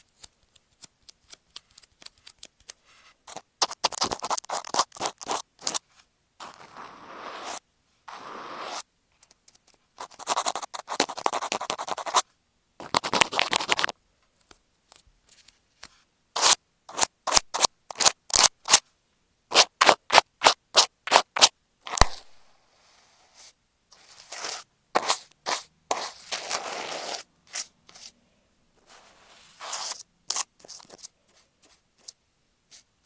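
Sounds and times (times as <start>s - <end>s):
scratching on masking tape: 0.0s - 5.8s, 6.4s - 12.2s, 12.8s - 14.0s, 16.4s - 18.8s, 19.5s - 22.3s, 23.4s - 28.1s, 28.8s - 32.9s.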